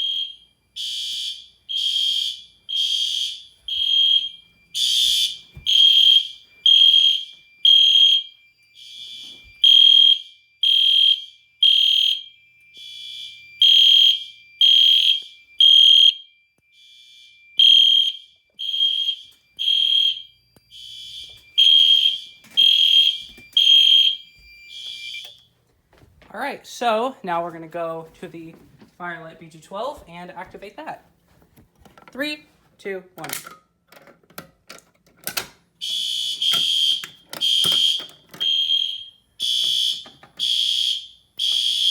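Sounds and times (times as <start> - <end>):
fire alarm horn pulsing: 0.0 - 25.5, 35.8 - 41.9.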